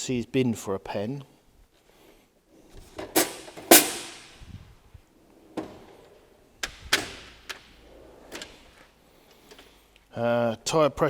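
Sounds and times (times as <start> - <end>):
metal drawers slamming: 3.0 - 4.4.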